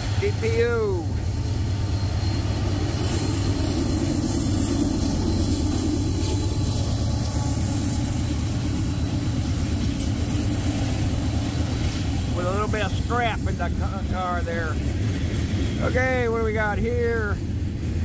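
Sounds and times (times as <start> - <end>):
diesel locomotive rumble: 0.0 - 18.0
rolling freight cars: 0.0 - 18.0.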